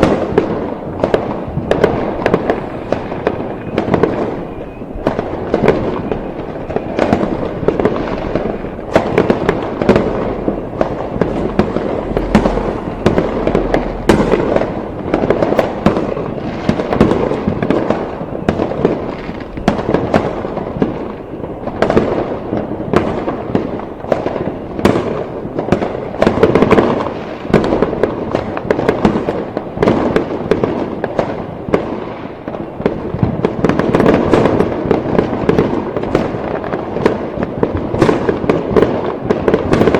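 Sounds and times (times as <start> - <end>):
fireworks bangs and crackles: 0.0 - 39.9.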